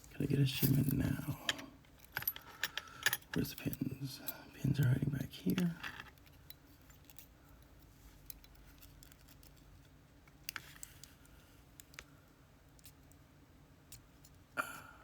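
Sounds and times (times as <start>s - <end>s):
low room hum: 0.0s - 15.0s
light metallic clicks of lock parts: 0.6s - 4.4s, 5.4s - 12.1s.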